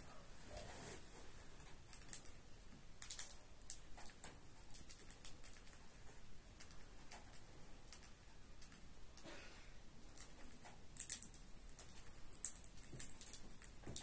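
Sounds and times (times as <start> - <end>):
parrot cracking seeds: 3.0 - 9.2, 10.1 - 14.0.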